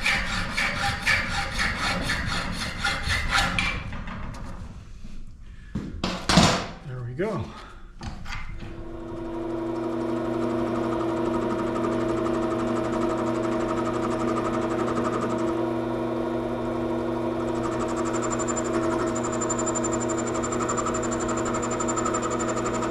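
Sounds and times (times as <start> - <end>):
lathe motor humming: 8.8 - 22.9.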